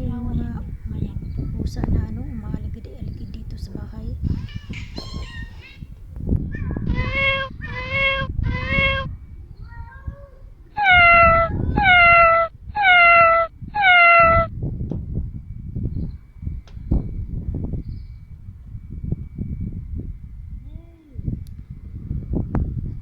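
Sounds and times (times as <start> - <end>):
cats meowing: 4.3 - 5.9, 6.5 - 14.5.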